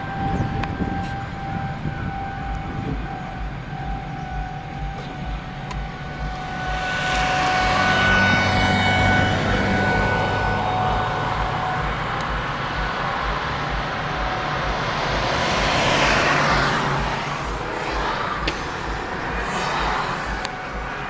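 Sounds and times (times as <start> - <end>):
low pulsing: 0.0 - 21.0
road and tyre noise: 0.0 - 21.0
vehicle rushing past: 4.8 - 21.0.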